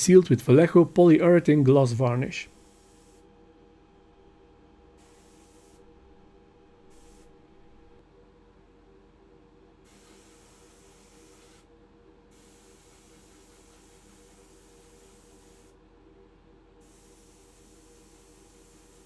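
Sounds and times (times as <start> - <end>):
steady low hum: 0.0 - 5.0, 5.8 - 9.8
spray gun hissing: 5.0 - 5.9, 6.9 - 7.4, 10.0 - 11.6, 12.4 - 15.7, 16.8 - 19.0.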